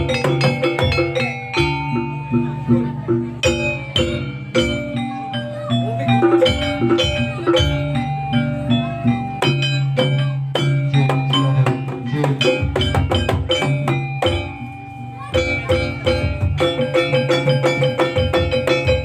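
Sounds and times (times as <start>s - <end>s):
drum strokes: 0.0s - 19.0s
gamelan tuned percussion: 0.0s - 19.0s.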